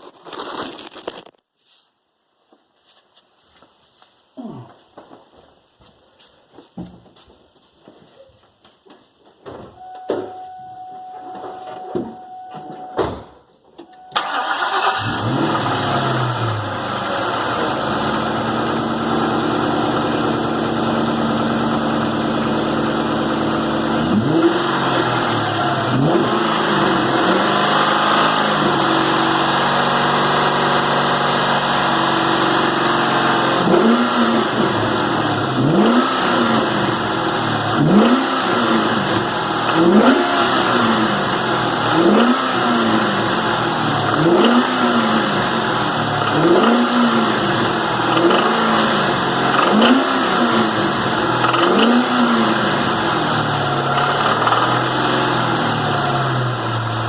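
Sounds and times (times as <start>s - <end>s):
car engine starting and revving: 14.1s - 57.0s.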